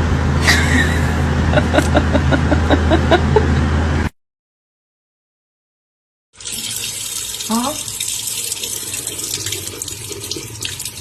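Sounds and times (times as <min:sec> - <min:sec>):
low vehicle-like hum: 0:00.0 - 0:04.1.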